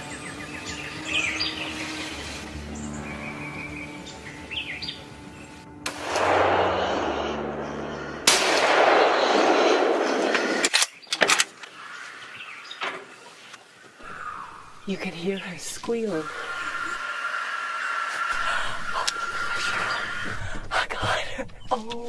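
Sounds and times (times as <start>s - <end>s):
birds chirping: 0.0s - 5.8s, 9.0s - 22.0s
loud rifle shot: 5.9s - 10.7s.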